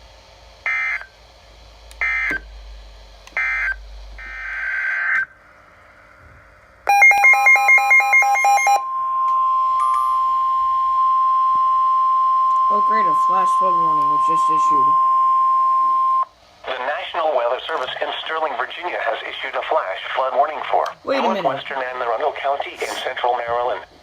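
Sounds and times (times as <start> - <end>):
steady warning alarm tone: 0.6 - 1.2, 2.0 - 2.5, 3.3 - 5.4, 6.8 - 16.4
digital data tone bursts: 6.9 - 16.3.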